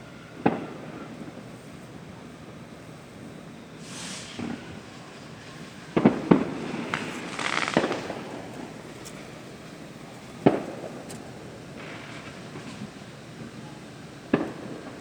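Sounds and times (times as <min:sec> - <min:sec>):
fireworks crackling: 0:02.4 - 0:15.0
fireworks bangs: 0:03.8 - 0:15.0.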